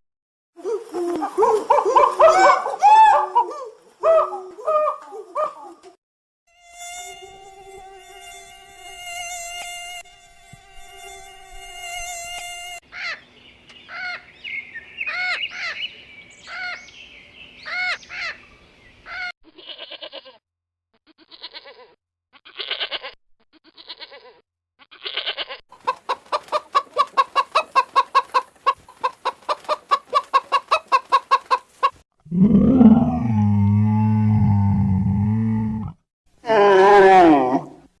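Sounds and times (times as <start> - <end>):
buzzing animal drone: 6.7 - 12.8
deep animal growl: 32.2 - 36.0
rising and falling animal calls: 32.3 - 37.8.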